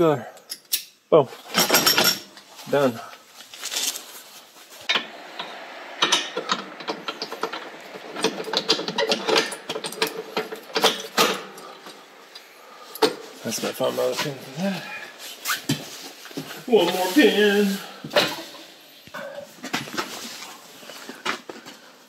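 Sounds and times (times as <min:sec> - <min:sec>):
metal parts clinking: 0:00.5 - 0:02.4.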